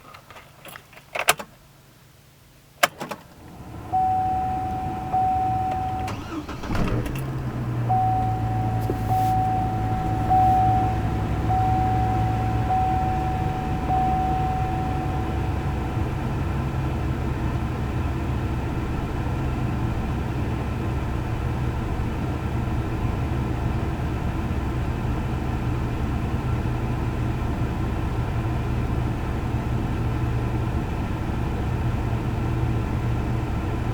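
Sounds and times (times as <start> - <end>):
engine cranking and idling: 2.8 - 22.4
warning chime beeping: 3.9 - 6.6, 7.8 - 16.3.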